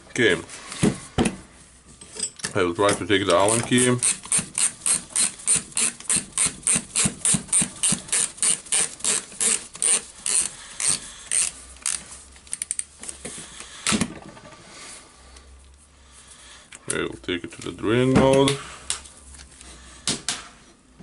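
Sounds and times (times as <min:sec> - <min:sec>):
drill chuck collar ratcheting clicks: 0:03.3 - 0:12.9.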